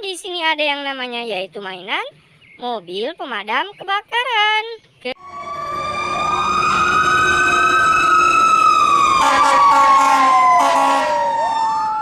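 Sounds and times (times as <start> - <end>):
fire engine siren wailing: 5.2 - 12.0.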